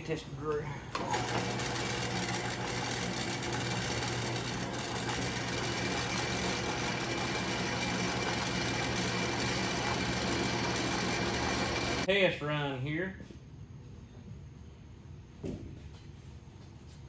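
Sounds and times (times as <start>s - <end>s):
electric drill drilling through steel: 1.0s - 12.1s.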